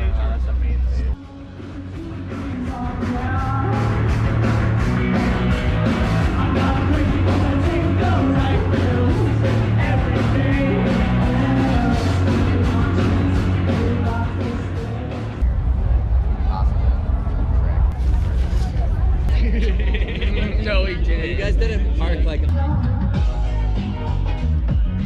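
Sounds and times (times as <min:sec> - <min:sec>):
rock music with singer: 0:00.0 - 0:16.3, 0:21.0 - 0:25.0
steady drum beat: 0:01.6 - 0:15.6.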